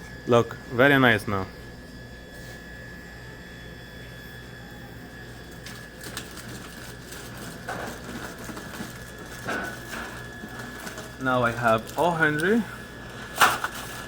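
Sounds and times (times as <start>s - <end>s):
low electrical hum: 0.0s - 14.0s
thin high whine: 0.0s - 14.0s
snack wrappers rustling: 5.4s - 14.0s.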